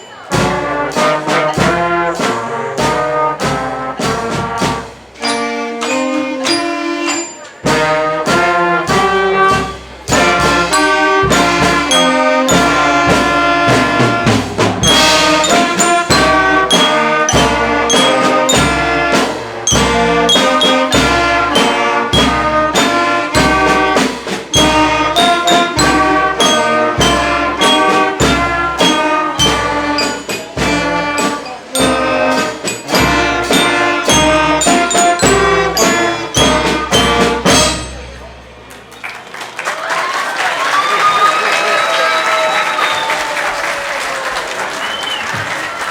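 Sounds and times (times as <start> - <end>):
drums keeping steady beat: 0.0 - 38.9, 41.4 - 45.9
brass instruments playing tune: 0.1 - 38.6.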